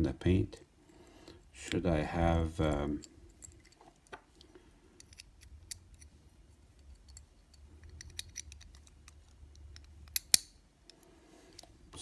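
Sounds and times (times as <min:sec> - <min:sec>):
small toy parts clicking: 0:06.8 - 0:11.0.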